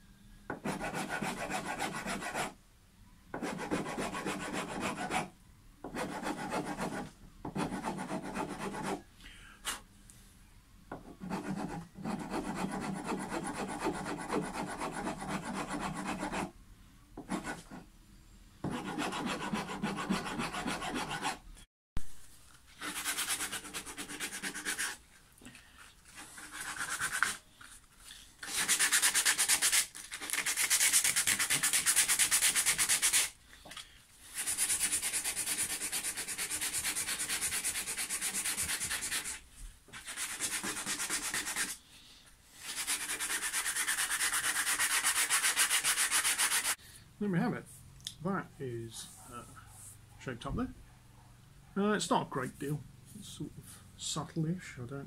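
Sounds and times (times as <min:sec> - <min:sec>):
filing and sanding wood: 0:00.5 - 0:02.6, 0:03.4 - 0:09.0, 0:11.0 - 0:16.5, 0:17.2 - 0:17.8, 0:18.6 - 0:21.4, 0:22.7 - 0:25.0, 0:26.1 - 0:27.4, 0:28.4 - 0:33.4, 0:34.3 - 0:41.8, 0:42.6 - 0:46.8.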